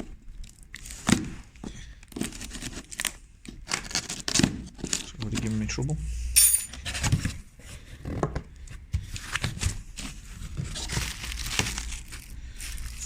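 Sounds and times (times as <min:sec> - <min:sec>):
cardboard box rustling and scraping: 0:06.8 - 0:13.0.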